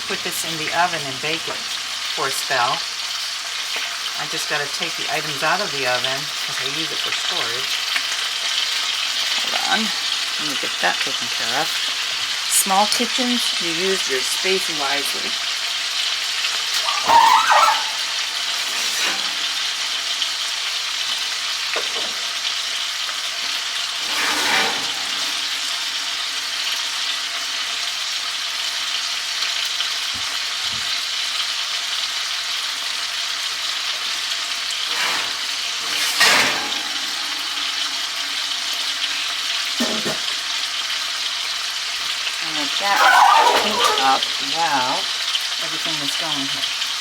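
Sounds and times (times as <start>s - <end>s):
chicken sizzling in a skillet: 0.0s - 47.0s
cookware clattering: 16.7s - 19.6s, 24.0s - 25.6s, 34.9s - 38.2s, 38.8s - 40.4s, 42.8s - 44.9s.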